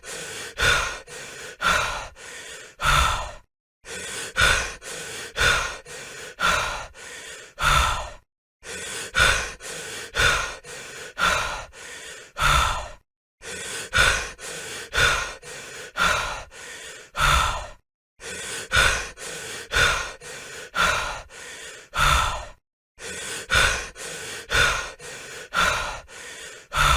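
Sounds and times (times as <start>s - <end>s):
person panting: 0.0s - 26.9s.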